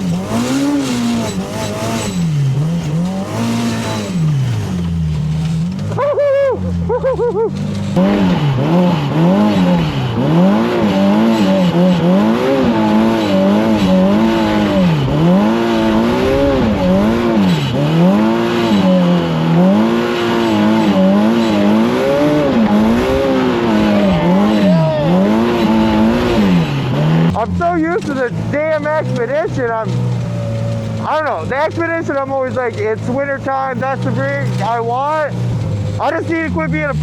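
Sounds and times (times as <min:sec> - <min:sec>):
engine revving up and down: 0:00.0 - 0:37.0.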